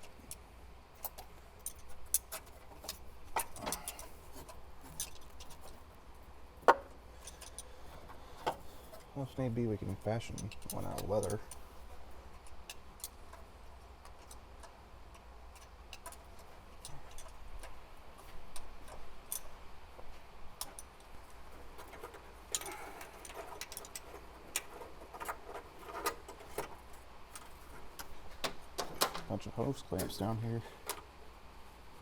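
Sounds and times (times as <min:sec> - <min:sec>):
hand tools clicking and tapping: 0:10.0 - 0:31.1.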